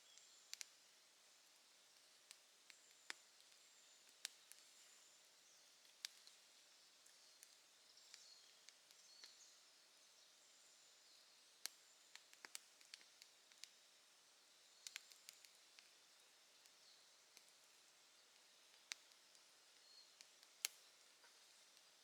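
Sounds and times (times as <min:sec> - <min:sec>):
low fire hiss: 0:00.0 - 0:22.0
campfire crackling and popping: 0:05.8 - 0:09.0, 0:11.6 - 0:13.7, 0:14.8 - 0:16.0, 0:18.2 - 0:21.9.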